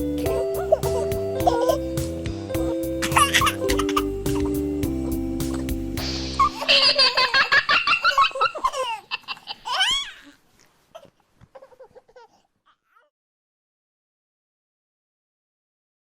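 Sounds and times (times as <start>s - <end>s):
high-pitched giggling: 0.2s - 1.9s, 2.6s - 5.8s, 6.4s - 10.3s.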